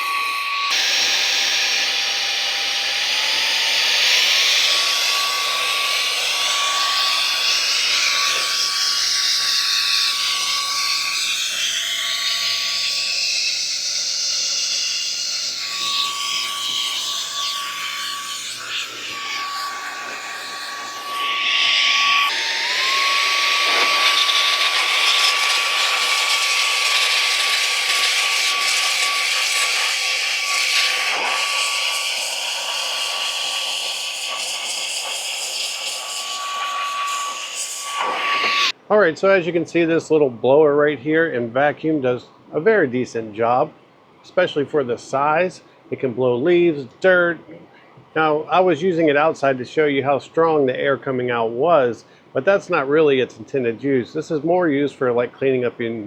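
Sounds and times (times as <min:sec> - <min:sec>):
air duster motor whine: 0:00.0 - 0:38.8.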